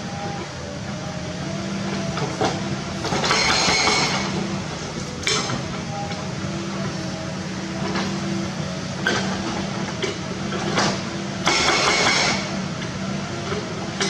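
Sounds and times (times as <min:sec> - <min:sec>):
diesel engine running: 0:00.0 - 0:14.0
sharp metallic knocks: 0:10.8 - 0:12.5
hydraulic hammer breaking rock: 0:11.4 - 0:12.5.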